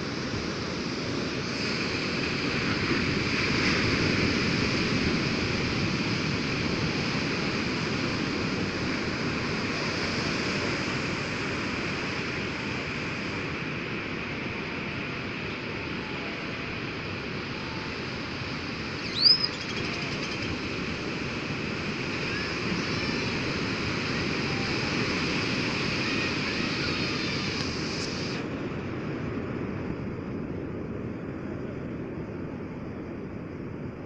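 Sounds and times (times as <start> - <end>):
sea waves washing onto beach: 0.0 - 32.2
sharp high chirp: 19.0 - 20.5.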